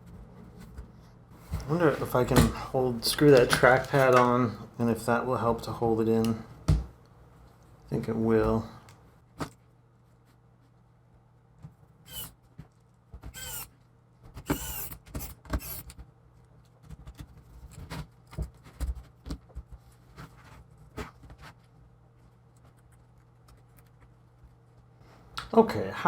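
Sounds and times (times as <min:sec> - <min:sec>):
plastic squeaks and scrapes: 0:12.1 - 0:12.4, 0:13.2 - 0:16.0.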